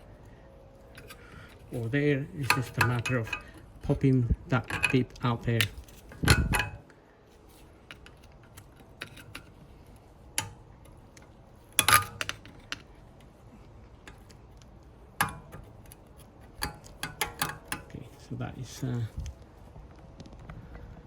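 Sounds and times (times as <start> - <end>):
screwdriver clinking on metal clip: 16.6 - 18.0.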